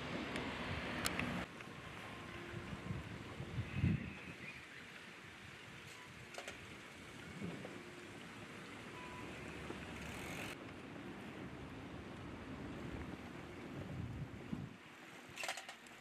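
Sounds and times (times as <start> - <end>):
faint riverside hiss: 0.0 - 16.0
small clicks: 15.3 - 16.0.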